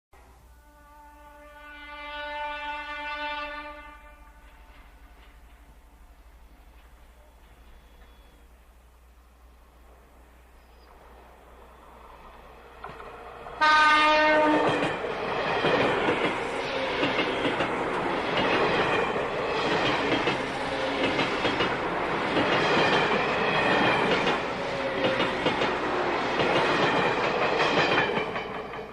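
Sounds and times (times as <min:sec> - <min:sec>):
train horn blast: 0:00.2 - 0:05.0, 0:13.6 - 0:14.9
train rumbling and clattering past: 0:01.8 - 0:28.9.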